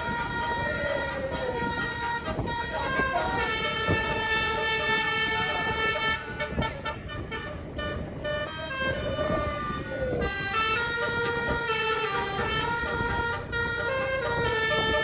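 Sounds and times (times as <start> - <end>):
bus horn playing a tune: 0.0 - 15.0.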